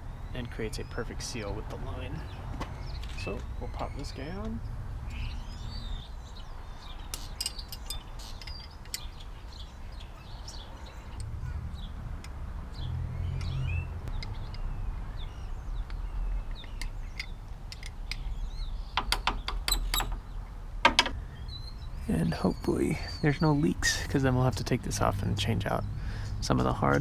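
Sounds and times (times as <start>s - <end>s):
songbirds chirping: 0.0s - 27.0s
steady low rumble: 11.1s - 19.0s.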